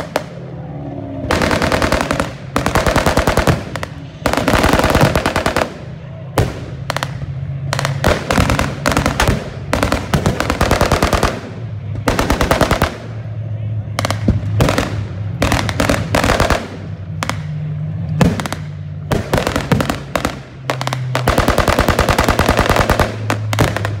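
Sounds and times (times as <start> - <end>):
low hum: 0.0 - 4.5
machine-gun fire: 1.2 - 13.2, 14.0 - 17.5, 18.2 - 24.0.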